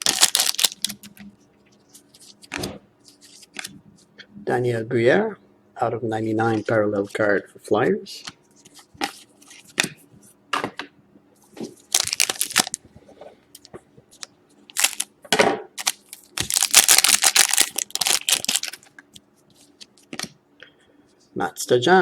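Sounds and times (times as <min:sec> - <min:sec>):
foil wrapper tearing and crinkling: 0:00.0 - 0:01.0, 0:11.9 - 0:12.8, 0:14.2 - 0:15.1, 0:15.8 - 0:18.9.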